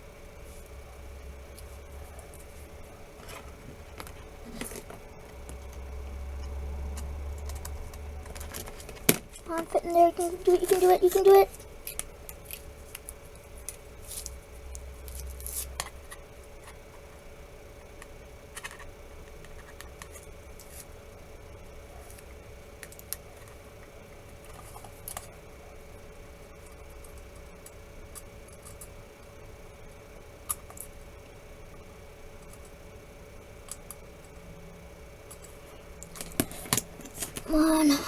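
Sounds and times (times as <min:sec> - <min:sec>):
faint steady hum: 0:00.0 - 0:38.0
plastic phone parts clicking and scraping: 0:06.4 - 0:09.7, 0:17.9 - 0:20.9, 0:35.3 - 0:37.5.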